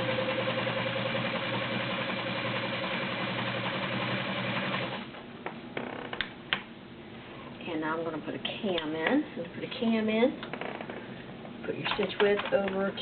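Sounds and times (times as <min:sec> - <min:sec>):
sewing machine running: 0:00.0 - 0:05.1.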